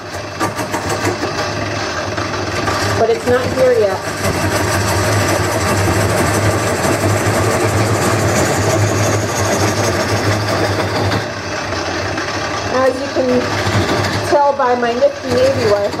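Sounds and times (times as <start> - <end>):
lathe motor hum: 0.0 - 16.0
turning tool scraping wood: 0.0 - 16.0.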